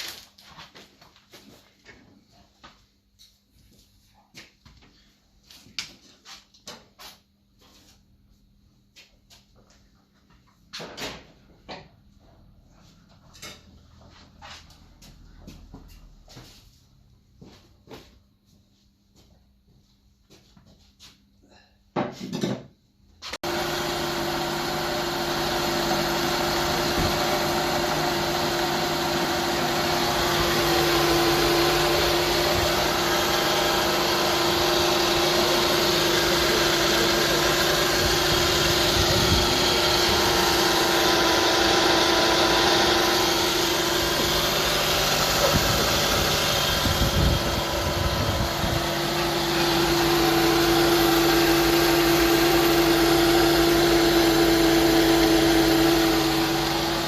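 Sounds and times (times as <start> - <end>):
car engine idling: 23.4 - 57.0.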